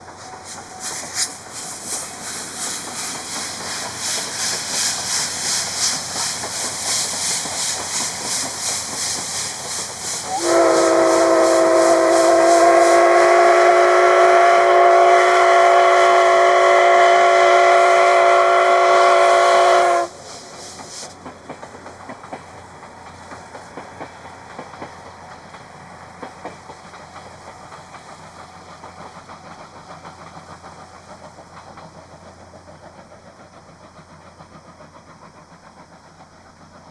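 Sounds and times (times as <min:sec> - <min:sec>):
steam hiss: 0:00.0 - 0:36.9
steam locomotive exhaust chuffs: 0:00.0 - 0:36.9
steam whistle blast: 0:10.2 - 0:20.1
irregular clicking and rumble: 0:20.8 - 0:36.9.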